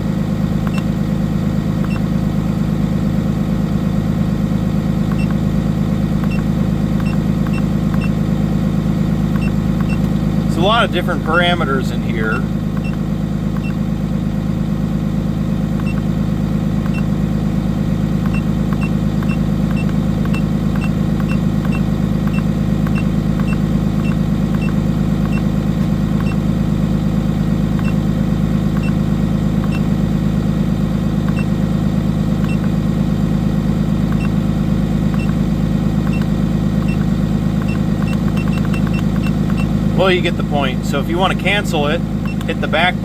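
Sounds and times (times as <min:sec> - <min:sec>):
diesel engine idling: 0:00.0 - 0:43.0.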